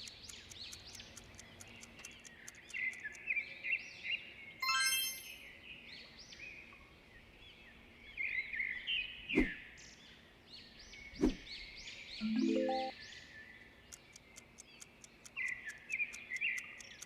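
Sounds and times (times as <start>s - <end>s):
birds chirping: 0.0s - 9.7s, 10.7s - 17.0s
outdoor background noise: 0.0s - 17.0s
bright ringing chime: 4.6s - 5.5s, 12.2s - 12.9s.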